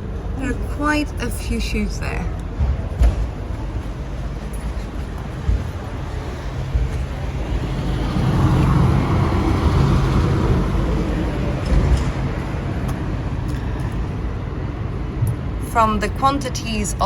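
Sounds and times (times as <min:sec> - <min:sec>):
traffic hum: 0:00.0 - 0:17.0
vehicle passing close by: 0:05.4 - 0:15.2.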